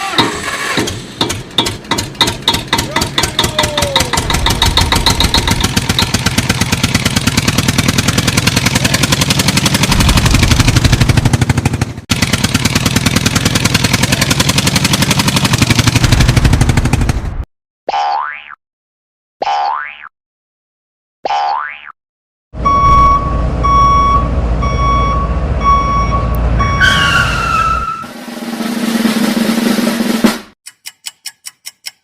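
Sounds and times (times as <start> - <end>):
engine starting and running: 0.0 - 17.5, 22.6 - 30.6.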